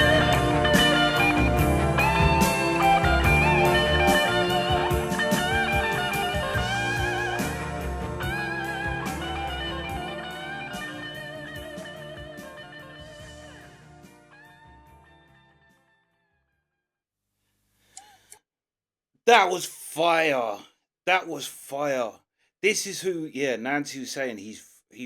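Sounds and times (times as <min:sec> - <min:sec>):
live rock band playing: 0:00.0 - 0:13.2
electric guitar lead: 0:00.0 - 0:13.6.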